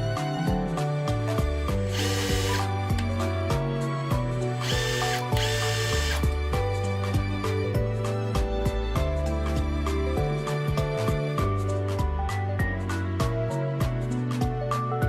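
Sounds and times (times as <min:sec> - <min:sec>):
background music: 0:00.0 - 0:15.0
impact driver motor whine: 0:01.8 - 0:02.8, 0:04.6 - 0:06.4.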